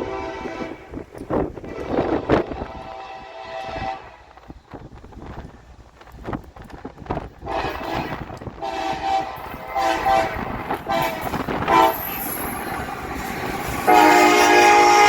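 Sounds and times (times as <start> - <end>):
locomotive air horn blasts: 0.0 - 1.0, 1.7 - 4.2, 7.5 - 12.3, 13.8 - 15.0.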